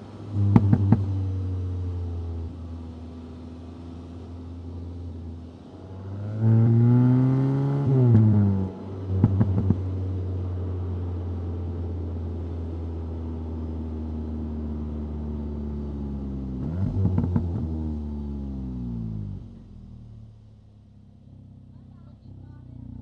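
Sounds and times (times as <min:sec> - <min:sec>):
car engine revving: 0:00.0 - 0:13.7, 0:15.6 - 0:23.0
exhaust pops: 0:00.3 - 0:01.5, 0:09.1 - 0:09.9, 0:16.6 - 0:17.7.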